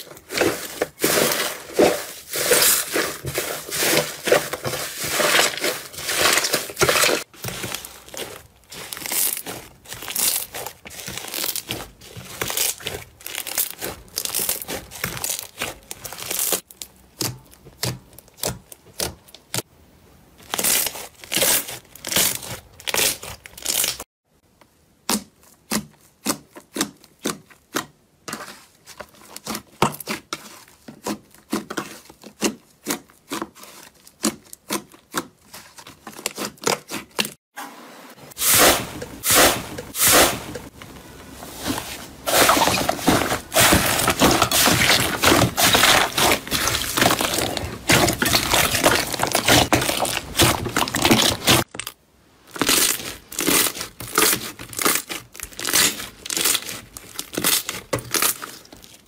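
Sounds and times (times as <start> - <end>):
slime squeezed wet crackling: 42.3 - 51.9.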